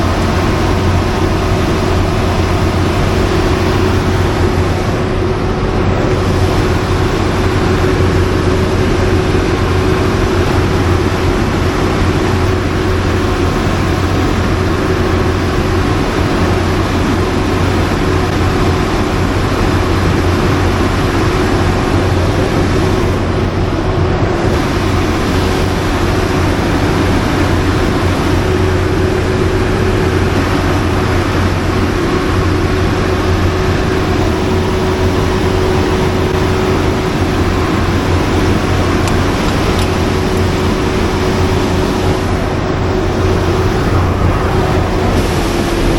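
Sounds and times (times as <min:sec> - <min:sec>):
generator machine drone: 0:00.0 - 0:45.9.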